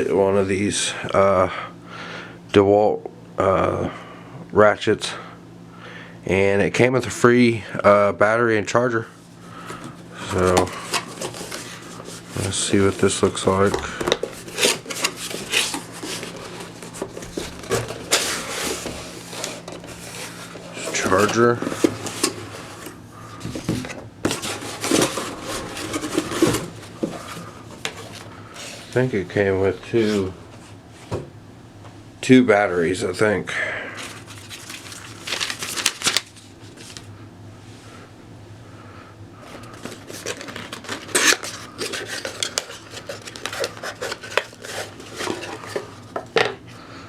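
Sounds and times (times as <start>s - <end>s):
packaging rustling: 9.5s - 29.0s, 34.0s - 37.1s, 39.4s - 46.4s.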